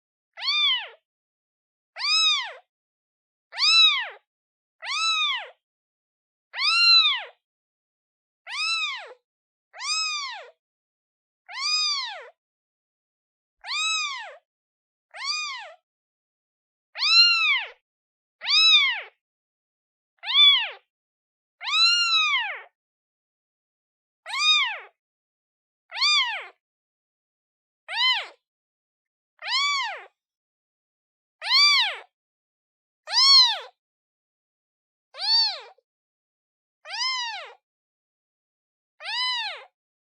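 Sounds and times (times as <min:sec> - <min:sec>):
kitten meowing: 0:00.4 - 0:01.0, 0:02.0 - 0:02.6, 0:03.5 - 0:04.2, 0:04.8 - 0:05.6, 0:06.6 - 0:07.4, 0:08.5 - 0:09.2, 0:09.8 - 0:10.6, 0:11.5 - 0:12.4, 0:13.6 - 0:14.4, 0:15.2 - 0:15.8, 0:17.0 - 0:17.8, 0:18.4 - 0:19.2, 0:20.2 - 0:20.8, 0:21.6 - 0:22.7, 0:24.3 - 0:24.9, 0:25.9 - 0:26.6, 0:27.9 - 0:28.4, 0:29.4 - 0:30.1, 0:31.4 - 0:32.1, 0:33.1 - 0:33.8, 0:35.2 - 0:35.8, 0:36.9 - 0:37.6, 0:39.0 - 0:39.7.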